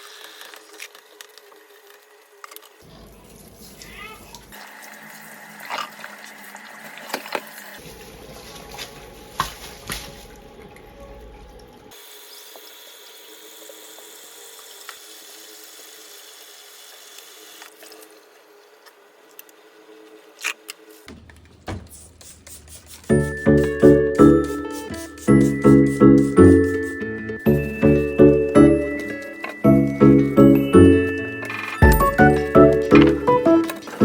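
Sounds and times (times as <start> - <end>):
sharp knocks and clatter: 21.1 - 22.7.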